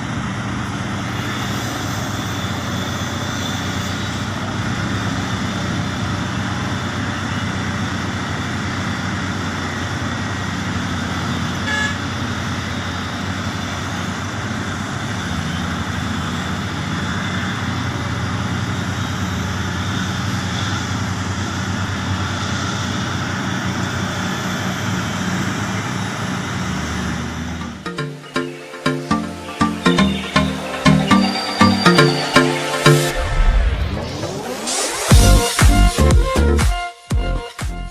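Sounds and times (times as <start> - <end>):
diesel engine running: 0.0 - 37.9
short beep: 27.8 - 34.2.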